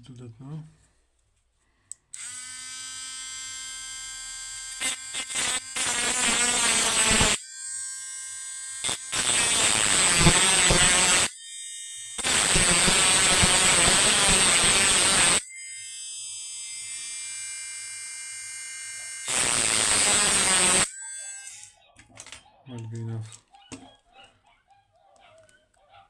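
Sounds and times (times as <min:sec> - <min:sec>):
rotary tool grinding metal: 0:02.2 - 0:11.4, 0:12.1 - 0:21.9
rotary tool whining: 0:03.4 - 0:11.3, 0:12.2 - 0:15.8, 0:18.8 - 0:21.9.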